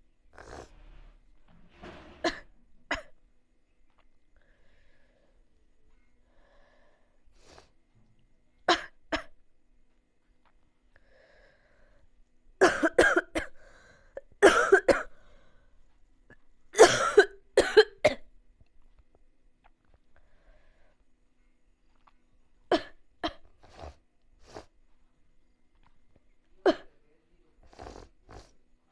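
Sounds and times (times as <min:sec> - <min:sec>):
person coughing: 0:12.6 - 0:13.6, 0:14.4 - 0:15.1, 0:16.8 - 0:18.2, 0:26.6 - 0:26.9.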